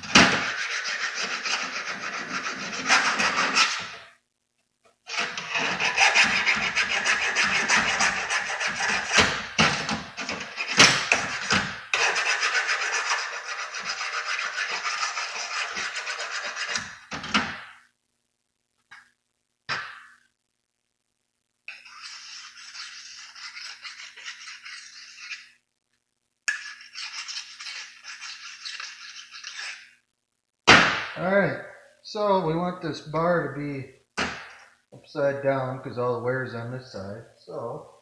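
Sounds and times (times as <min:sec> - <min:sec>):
hand file rasping on steel: 0:05.1 - 0:09.3.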